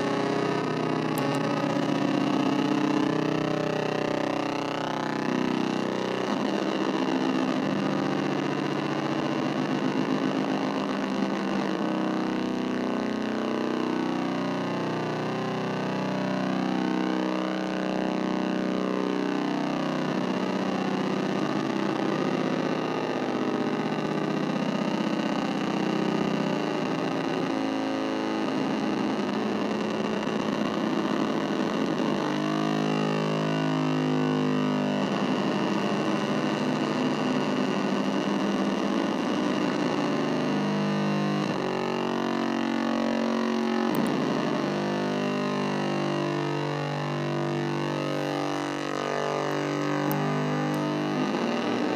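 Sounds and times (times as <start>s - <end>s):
synthesizer drone: 41.5s - 51.9s.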